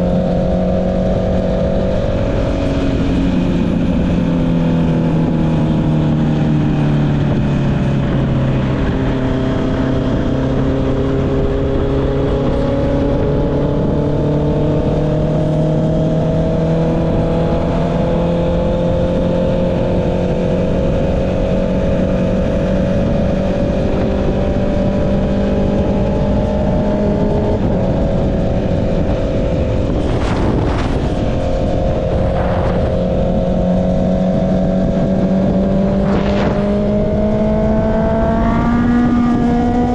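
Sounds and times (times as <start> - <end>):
motorcycle engine cruising: 0.0 - 39.9
wind noise: 0.0 - 39.9
brief whooshes: 36.0 - 36.9.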